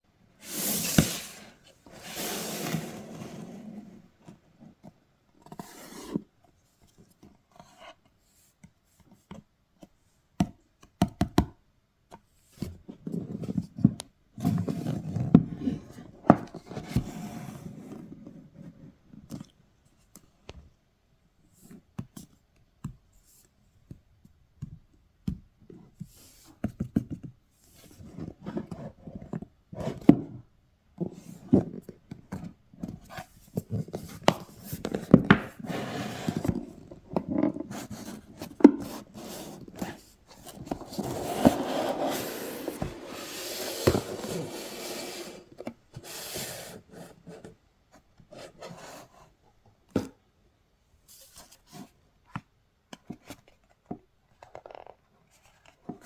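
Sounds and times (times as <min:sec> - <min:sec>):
cardboard packaging rubbing and sliding: 0:00.4 - 0:04.1, 0:33.8 - 0:47.5.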